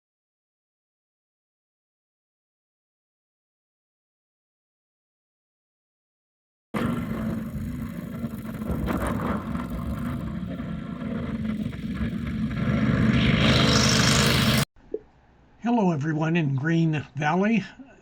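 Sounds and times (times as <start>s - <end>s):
machinery engine running: 6.8s - 14.7s.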